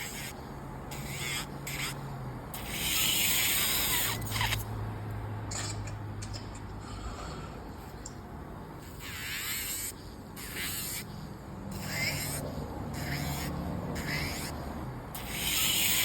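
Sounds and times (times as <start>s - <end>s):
nail drill grinding: 0.0s - 2.0s, 2.6s - 4.6s, 11.8s - 12.4s, 13.0s - 14.6s, 15.2s - 16.0s.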